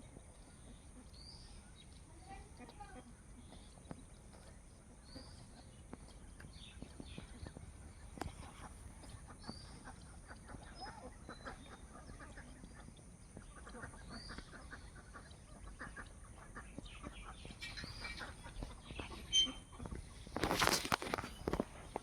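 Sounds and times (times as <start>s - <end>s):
faint fowl calls: 0.0s - 22.0s
light clicks and rustling: 19.8s - 22.0s.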